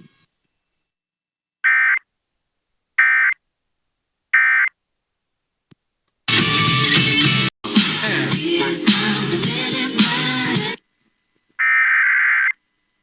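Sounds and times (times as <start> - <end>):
music: 6.3 - 10.8.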